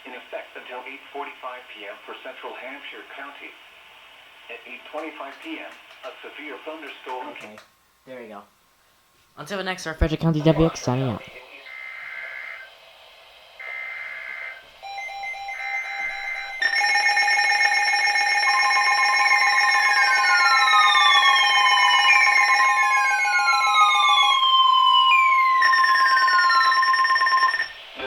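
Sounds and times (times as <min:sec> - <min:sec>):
steady warning alarm tone: 0:13.6 - 0:27.8
warbling data tones: 0:13.6 - 0:27.8
falling siren-like sweeps: 0:14.8 - 0:27.8.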